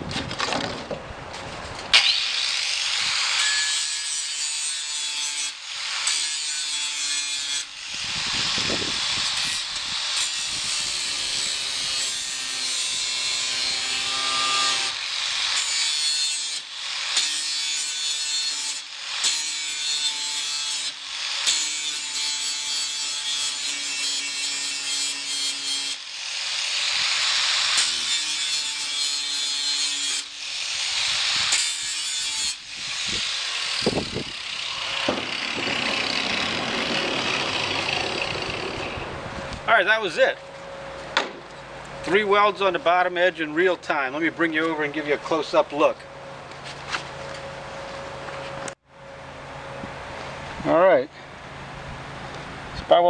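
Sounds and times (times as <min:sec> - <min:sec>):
grinder grinding metal: 0:01.9 - 0:39.2.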